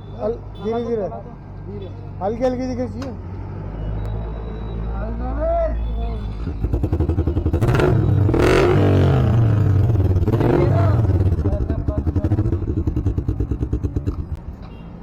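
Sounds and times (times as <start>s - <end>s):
motorcycle engine revving and idling: 6.4s - 14.4s.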